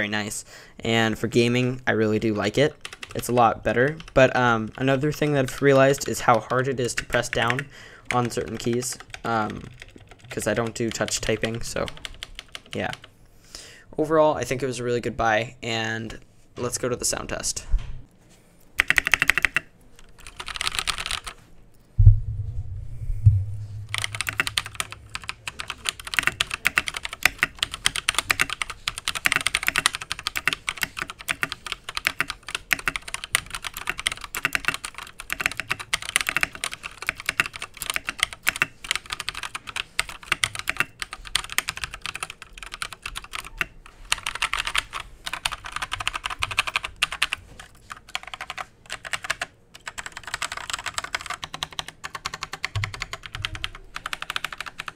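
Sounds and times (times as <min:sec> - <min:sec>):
mechanical keyboard typing: 0:02.8 - 0:13.1, 0:18.8 - 0:21.4, 0:23.9 - 0:54.9
low thump: 0:22.0 - 0:24.2.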